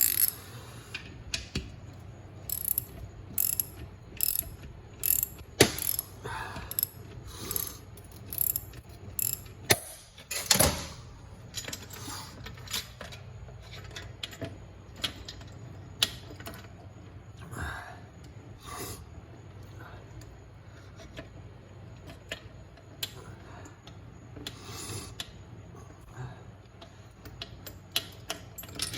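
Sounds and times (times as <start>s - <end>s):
ratchet wrench clicking: 0.0s - 0.5s, 2.4s - 10.0s
sharp metal knocks: 5.1s - 6.0s.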